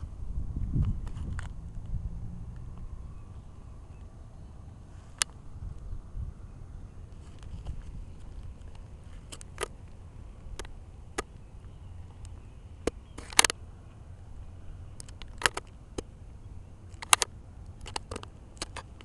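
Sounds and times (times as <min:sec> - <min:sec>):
wind rumbling on microphone: 0:00.0 - 0:13.5
sharp clicks and crackles: 0:07.1 - 0:13.6, 0:14.9 - 0:16.1, 0:16.9 - 0:19.0.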